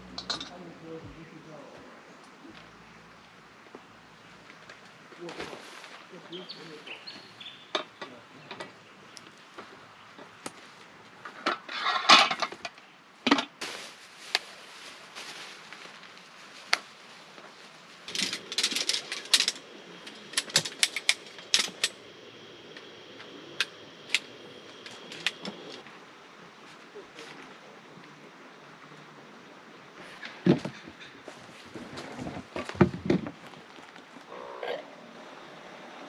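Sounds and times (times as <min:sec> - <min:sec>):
camping gear clicking and clattering: 0:00.0 - 0:00.6, 0:07.0 - 0:25.9, 0:30.0 - 0:34.3
rustling: 0:00.0 - 0:27.8, 0:30.0 - 0:34.6.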